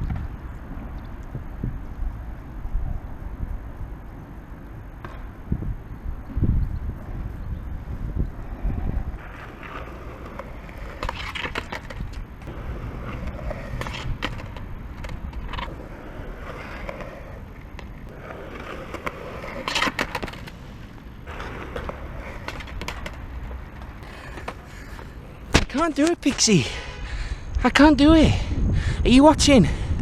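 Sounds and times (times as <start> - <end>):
skateboard wheels rumbling: 0.0 - 27.8
skateboard clacks: 4.2 - 5.5, 8.3 - 26.6.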